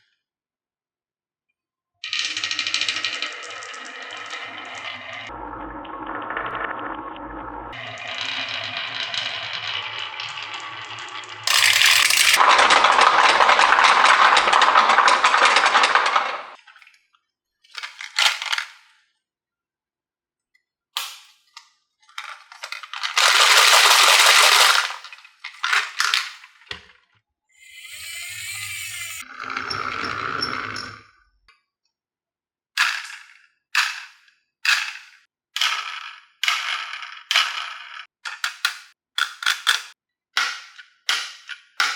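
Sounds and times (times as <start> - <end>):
marbles clacking on track: 2.0 - 5.3, 7.7 - 16.6, 22.2 - 26.3, 34.7 - 41.9
marbles rolling down wooden track: 2.0 - 16.6, 17.8 - 18.8, 22.2 - 26.8, 32.8 - 41.9.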